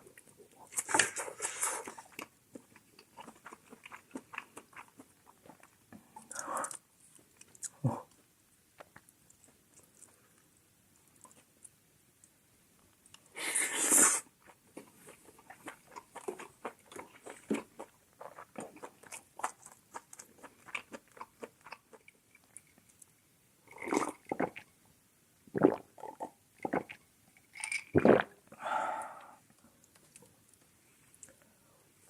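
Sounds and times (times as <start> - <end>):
close chewing of food: 0.0 - 8.2, 14.2 - 24.7
loud mouth sounds: 25.5 - 26.9, 28.0 - 29.4.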